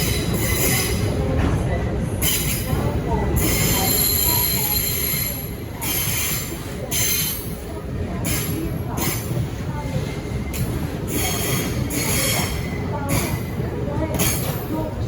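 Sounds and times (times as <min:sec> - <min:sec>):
train wheels squealing: 0:00.0 - 0:01.2, 0:02.2 - 0:02.8, 0:03.4 - 0:07.6, 0:10.0 - 0:13.6
low train rumble: 0:00.0 - 0:15.0.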